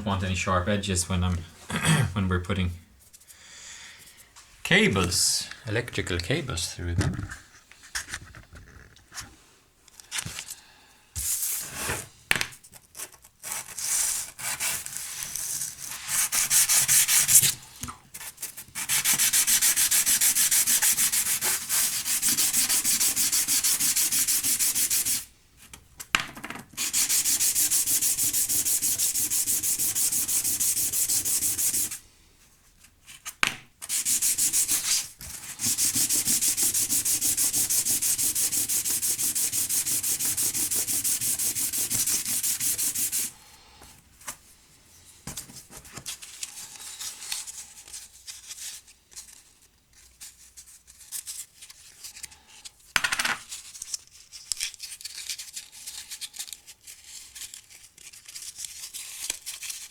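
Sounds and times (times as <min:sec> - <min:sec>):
sandpaper rubbing: 0:11.2 - 0:12.1, 0:13.0 - 0:17.6, 0:18.2 - 0:25.3, 0:26.8 - 0:32.0, 0:33.8 - 0:43.3.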